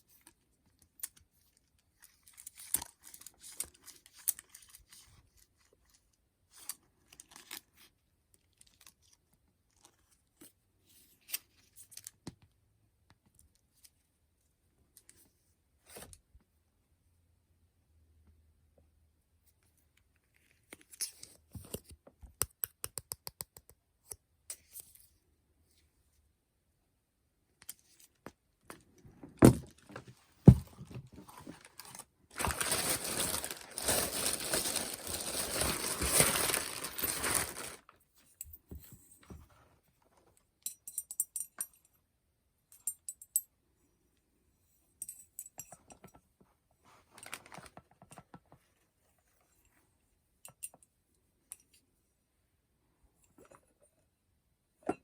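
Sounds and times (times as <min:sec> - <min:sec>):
rustling: 0:29.7 - 0:38.0.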